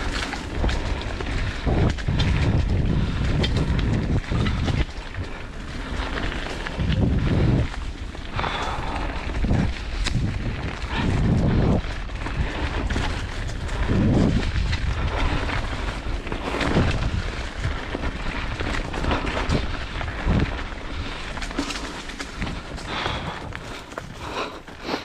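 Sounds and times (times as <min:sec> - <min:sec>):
bike knocks and rattles: 0:00.0 - 0:07.8
tyre rumble: 0:00.0 - 0:25.0
wind buffeting microphone: 0:00.0 - 0:25.0.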